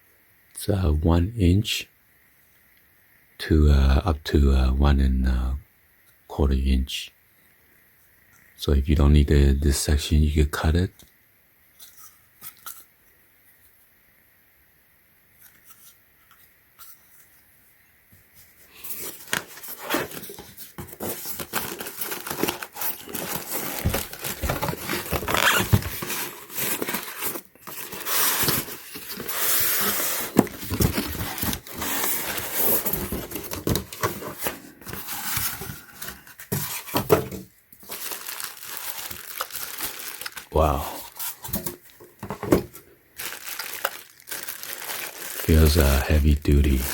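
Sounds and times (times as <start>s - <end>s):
packaging crinkling and tearing: 18.8s - 37.1s, 37.8s - 42.3s, 43.2s - 46.9s.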